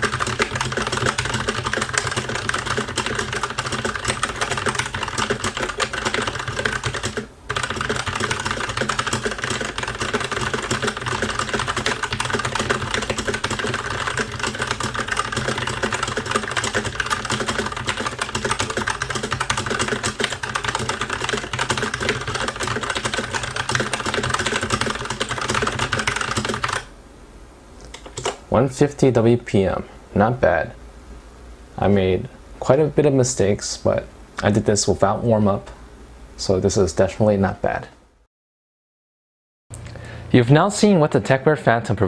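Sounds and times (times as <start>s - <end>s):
fast mechanical keyboard typing: 0.0s - 26.9s.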